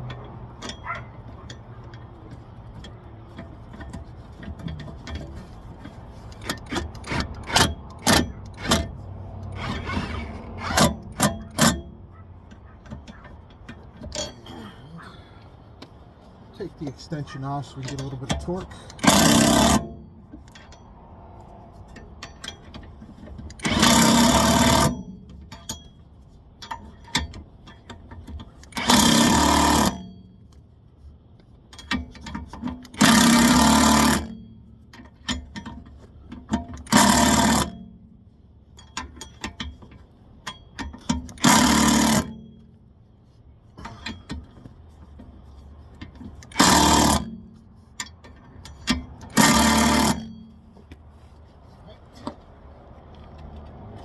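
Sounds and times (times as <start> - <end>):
impact wrench hammering: 10.6 - 12.0, 17.8 - 20.8, 23.6 - 25.9, 28.6 - 30.1, 31.8 - 35.8, 36.5 - 38.0, 40.5 - 42.7, 46.1 - 50.6.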